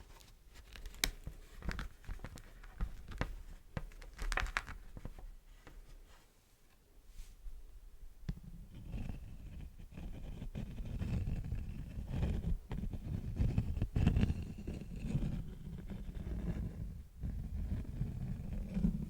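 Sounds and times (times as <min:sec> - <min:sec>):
wax rubbing and crinkling: 0:00.0 - 0:05.2.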